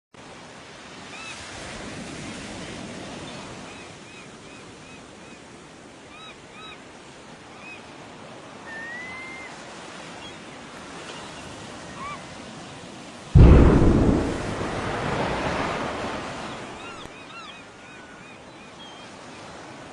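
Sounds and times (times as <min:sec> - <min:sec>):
surf and wind noise: 0:00.2 - 0:19.9
sudden loud blast: 0:13.4 - 0:16.9.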